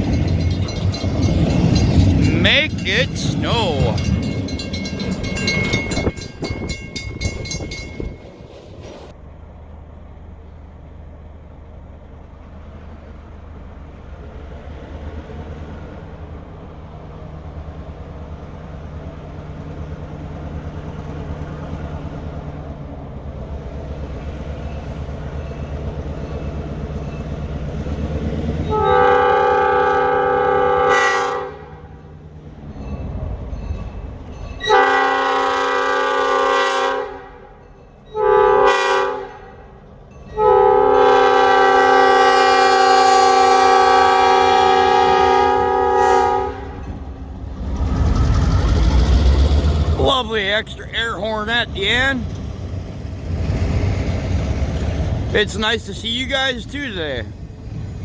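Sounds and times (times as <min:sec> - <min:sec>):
diesel locomotive engine rumble: 0:00.0 - 0:58.0
locomotive air horn blasts: 0:28.7 - 0:32.0, 0:34.6 - 0:39.6, 0:40.4 - 0:46.9.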